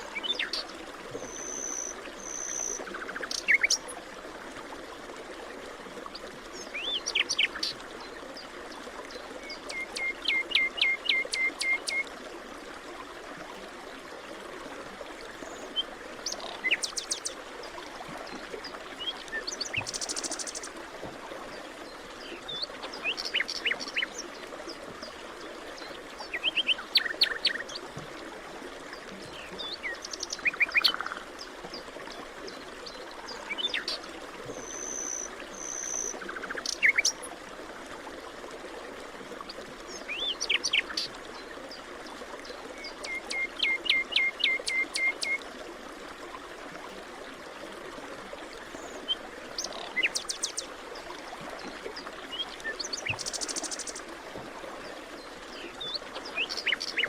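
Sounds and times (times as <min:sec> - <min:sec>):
stream running water: 0:00.0 - 0:57.0.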